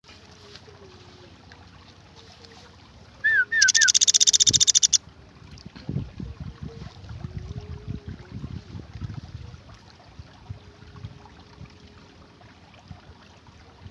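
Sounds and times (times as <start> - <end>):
woodpecker chirps and rattling trill: 3.3 - 5.0.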